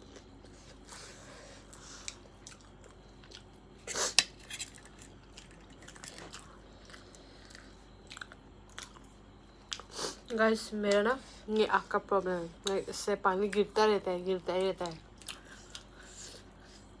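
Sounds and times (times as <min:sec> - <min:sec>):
person chewing: 0:00.0 - 0:10.3, 0:14.9 - 0:16.9.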